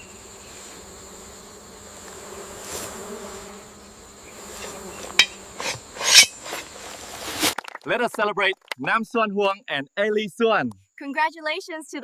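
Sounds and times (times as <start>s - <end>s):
insects buzzing: 0.0s - 7.6s.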